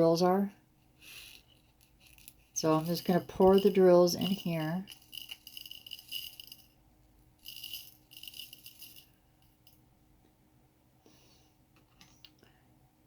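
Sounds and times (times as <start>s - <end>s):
small beads rattling into tray: 1.0s - 6.7s, 7.4s - 9.1s.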